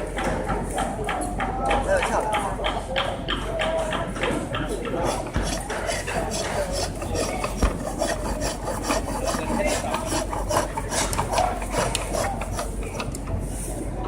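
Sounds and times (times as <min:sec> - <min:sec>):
lathe tool rasping wood: 0:05.0 - 0:13.1.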